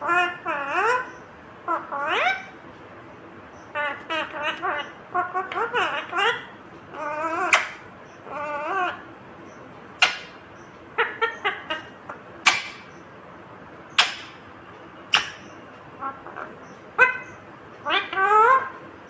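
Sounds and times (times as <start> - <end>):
high-pitched parakeet shrieks: 0.0 - 2.5, 3.8 - 9.0, 16.0 - 18.8
parakeet chirps: 0.0 - 2.6, 3.5 - 13.1, 13.9 - 18.8
parakeet calling: 0.0 - 19.0.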